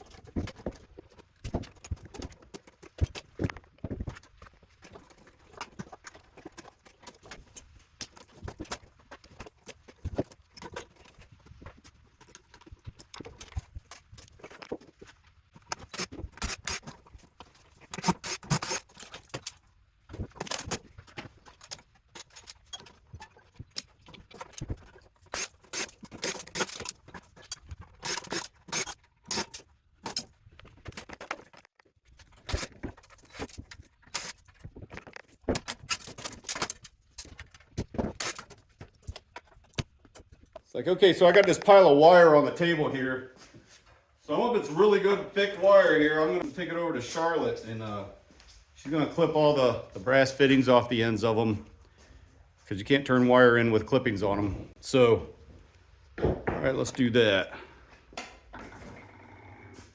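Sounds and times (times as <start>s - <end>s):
metal parts clinking and scraping: 15.6s - 40.4s.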